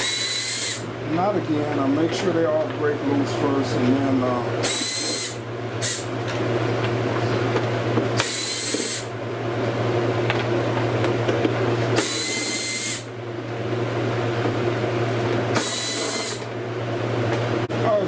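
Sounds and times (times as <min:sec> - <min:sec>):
cordless drill spinning: 0:00.0 - 0:00.8, 0:04.6 - 0:06.1, 0:08.2 - 0:09.1, 0:12.0 - 0:13.0, 0:15.6 - 0:16.4
steady low hum: 0:00.0 - 0:12.0.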